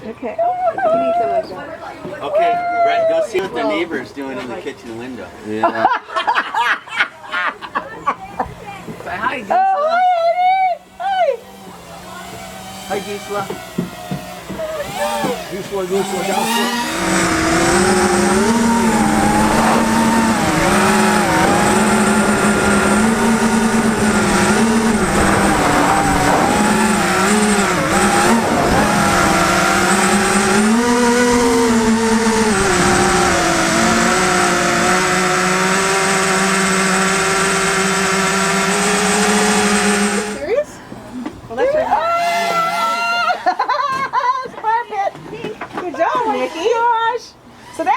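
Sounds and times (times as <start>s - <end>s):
quadcopter motors whining: 9.5s - 43.7s.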